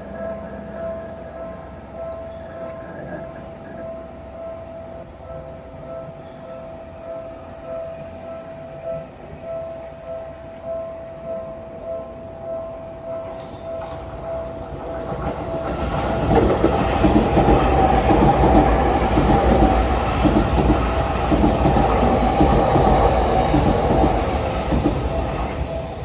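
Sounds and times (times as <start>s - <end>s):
crossing bells ringing: 0.0s - 26.0s
train wheels clacking: 13.2s - 26.0s.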